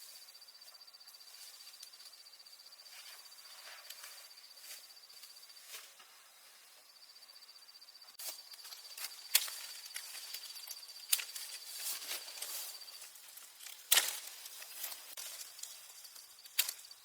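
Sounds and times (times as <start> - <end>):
insect trilling: 6.9 - 17.0
sharp snaps and rustles: 8.2 - 17.0.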